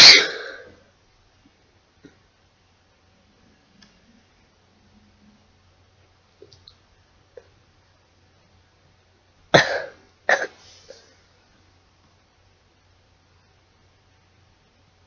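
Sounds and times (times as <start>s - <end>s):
person sneezing: 0.0s - 0.8s, 9.5s - 11.2s.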